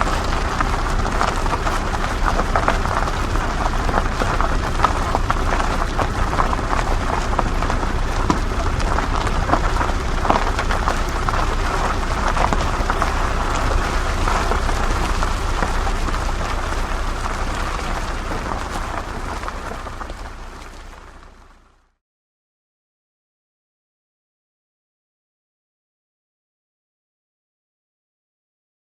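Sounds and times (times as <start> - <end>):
small stones ticking: 0.0 - 21.5
tyres crunching on gravel: 0.0 - 21.8
low engine rumble: 0.0 - 22.0.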